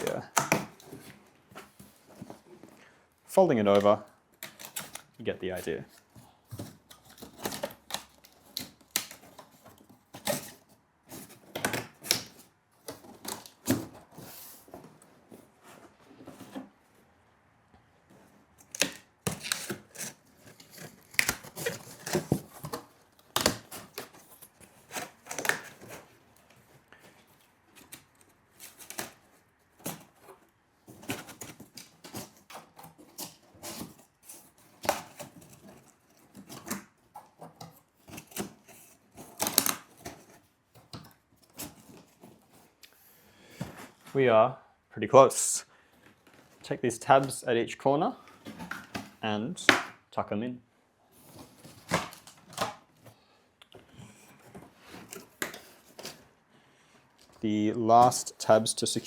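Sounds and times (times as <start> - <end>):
cardboard clicks and knocks: 0.0 - 2.8, 6.0 - 16.7, 18.1 - 42.6, 48.4 - 50.0, 51.3 - 56.2
cardboard scraping rustles: 0.0 - 3.0, 3.6 - 17.1, 18.0 - 44.2, 51.1 - 59.0.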